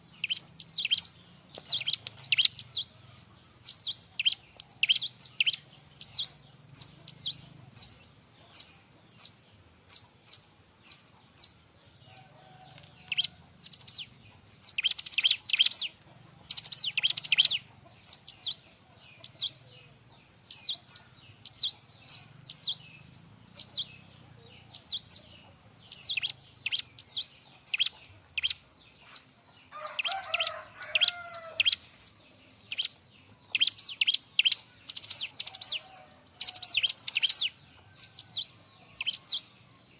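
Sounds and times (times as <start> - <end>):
bird rapid chattering: 0.0 - 2.8, 13.1 - 18.6, 25.9 - 29.3, 32.7 - 35.8, 36.4 - 38.4
bird sharp high chirps: 0.0 - 2.9, 13.0 - 18.6, 25.9 - 35.8, 36.4 - 39.6.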